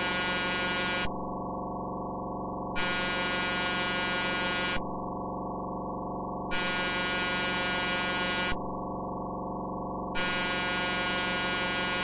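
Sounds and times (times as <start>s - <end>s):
buzzy electronic alarm tone: 0.0s - 1.2s, 2.8s - 4.9s, 6.5s - 8.6s, 10.2s - 12.0s.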